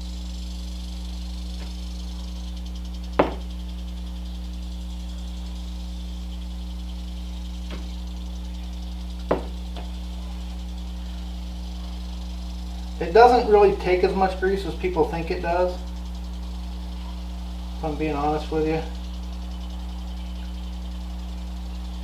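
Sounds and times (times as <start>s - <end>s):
steady low hum: 0.0s - 22.0s
tools knocking: 3.2s - 3.4s, 9.3s - 9.9s.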